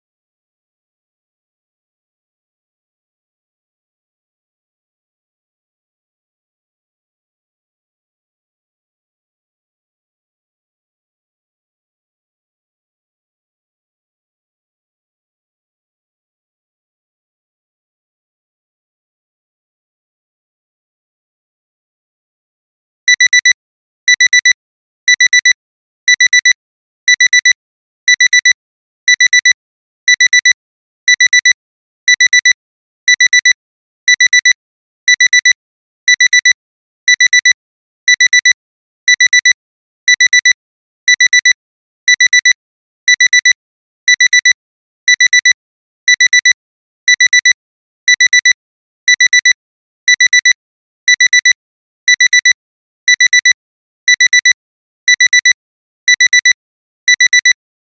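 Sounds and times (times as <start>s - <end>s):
alarm clock beeping: 23.1s - 23.5s, 24.1s - 24.5s, 25.1s - 25.5s, 26.1s - 26.5s, 27.1s - 29.5s, 30.1s - 33.5s, 34.1s - 34.5s, 35.1s - 41.5s, 42.1s - 42.5s, 43.1s - 49.5s, 50.1s - 57.6s.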